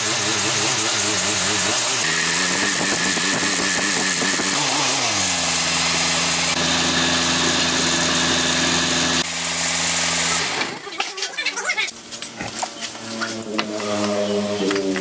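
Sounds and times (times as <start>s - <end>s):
vehicle engine idling: 0.0s - 10.6s.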